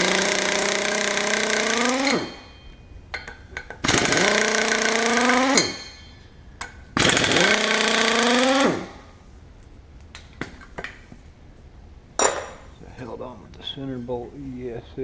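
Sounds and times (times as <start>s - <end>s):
impact wrench hammering: 0.0s - 8.9s.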